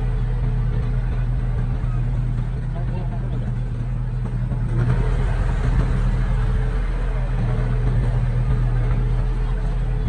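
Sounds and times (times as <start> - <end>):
diesel engine of earthmoving equipment: 0.0 - 10.0.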